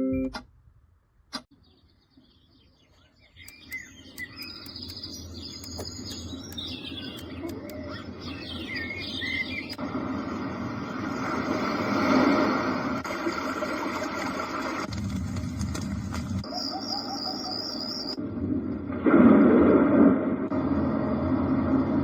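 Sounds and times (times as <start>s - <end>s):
birds chirping and twittering: 1.5s - 11.6s, 16.4s - 18.2s
click: 3.4s - 8.0s
steady rushing noise: 8.0s - 15.3s, 18.2s - 22.0s.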